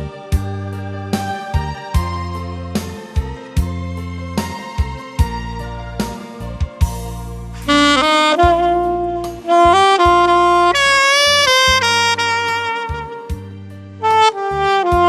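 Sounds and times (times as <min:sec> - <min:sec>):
backing track with bass and drums: 0:00.0 - 0:15.0
saxophone slow melody: 0:07.4 - 0:15.0.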